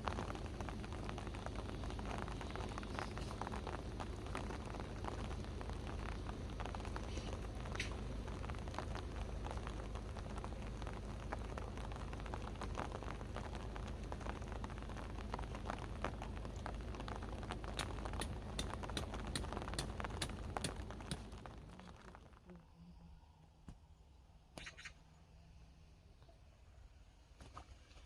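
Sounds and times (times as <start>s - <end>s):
steady rain falling: 0.0s - 24.4s
drops ticking on a surface: 17.4s - 22.1s.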